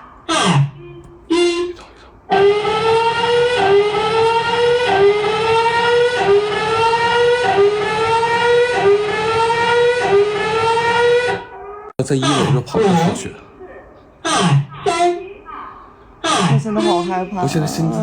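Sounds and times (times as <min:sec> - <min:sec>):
buzzy rising alarm tone: 0:00.3 - 0:11.7.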